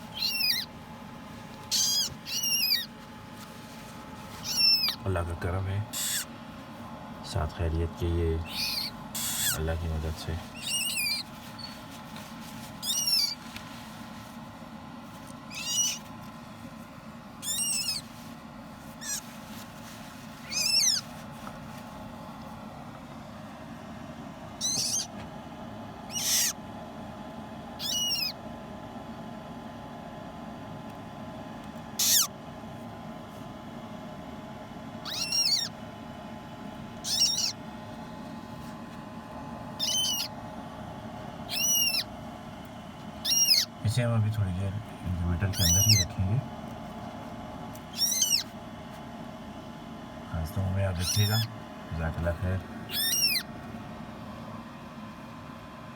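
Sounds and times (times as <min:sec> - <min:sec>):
faint steady hum: 0:00.0 - 0:55.9
parrot chick cheeping: 0:00.1 - 0:00.7, 0:01.6 - 0:02.9, 0:04.4 - 0:05.0, 0:05.9 - 0:06.3, 0:08.4 - 0:09.6, 0:10.5 - 0:11.8, 0:12.8 - 0:13.4, 0:15.5 - 0:16.1, 0:17.4 - 0:18.1, 0:19.0 - 0:19.3, 0:20.4 - 0:21.0, 0:24.6 - 0:25.2, 0:26.0 - 0:26.6, 0:27.8 - 0:28.4, 0:32.0 - 0:32.3, 0:35.0 - 0:35.8, 0:37.0 - 0:37.6, 0:39.8 - 0:40.4, 0:41.4 - 0:42.1, 0:43.2 - 0:43.7, 0:45.5 - 0:46.2, 0:47.9 - 0:48.5, 0:51.0 - 0:51.5, 0:52.9 - 0:53.5.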